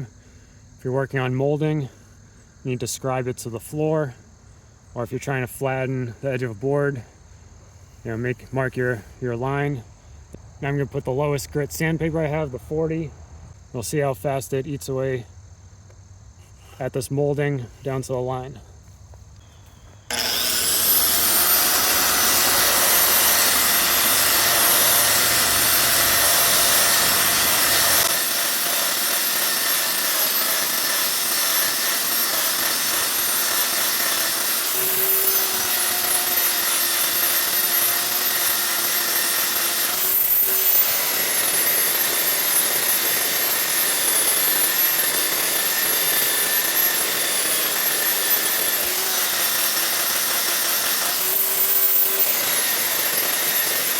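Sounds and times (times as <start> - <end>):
belt sander whining: 17.9 - 53.9.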